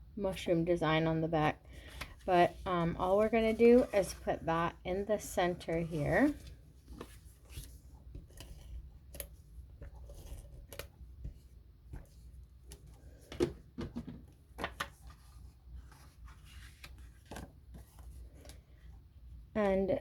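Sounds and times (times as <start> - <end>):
paper rustling: 1.8 - 4.4.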